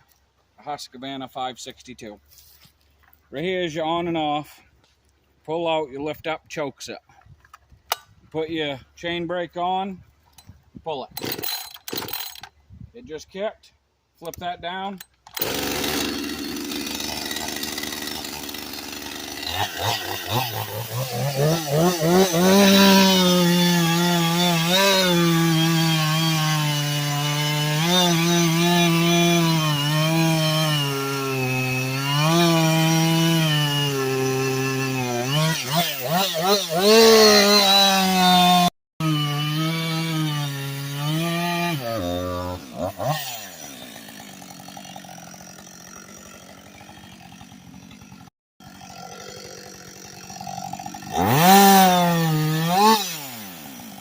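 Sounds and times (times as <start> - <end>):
chainsaw pull-starting and running: 11.1 - 12.5, 15.0 - 54.0.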